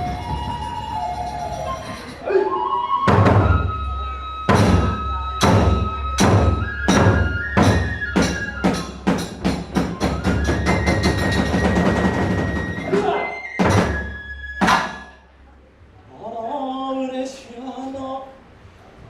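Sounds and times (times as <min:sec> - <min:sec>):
bamboo flute long notes: 0:00.0 - 0:15.3
drum strikes: 0:03.1 - 0:03.7, 0:04.5 - 0:15.2.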